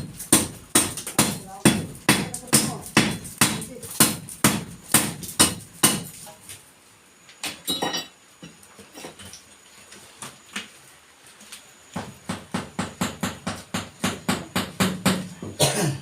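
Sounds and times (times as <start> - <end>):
sharp knocks: 12.0 - 15.3.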